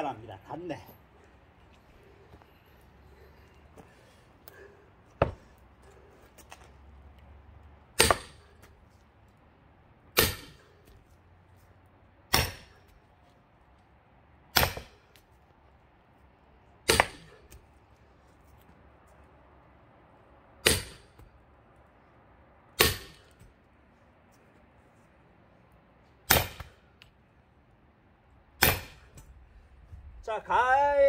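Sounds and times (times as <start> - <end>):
hammer blows splitting a log: 8.0 - 8.5, 10.2 - 10.6, 12.3 - 12.8, 14.5 - 15.0, 16.9 - 17.6, 20.6 - 21.2, 22.8 - 23.4, 26.3 - 26.8, 28.6 - 29.2.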